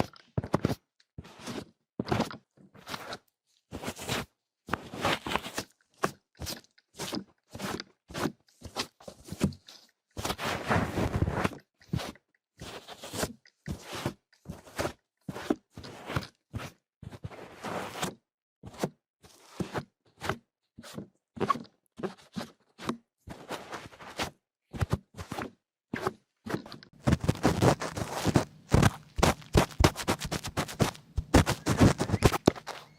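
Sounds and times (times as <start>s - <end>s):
short crackly noises: 27.0s - 32.9s.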